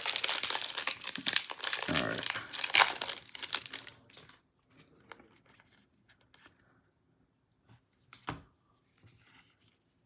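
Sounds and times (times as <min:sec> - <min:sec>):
foil wrapper crinkle: 0:00.0 - 0:04.4.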